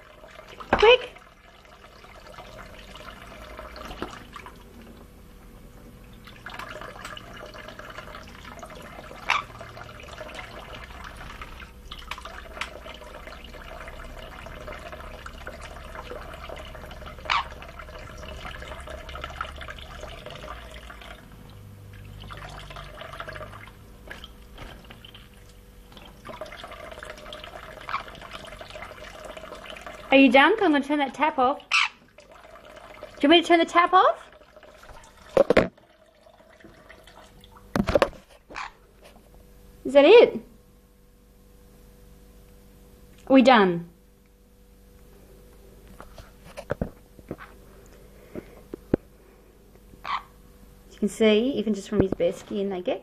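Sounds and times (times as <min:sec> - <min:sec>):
tap water splashing: 0:00.4 - 0:01.1, 0:03.5 - 0:05.1, 0:05.8 - 0:30.0, 0:34.6 - 0:35.9, 0:36.5 - 0:39.2.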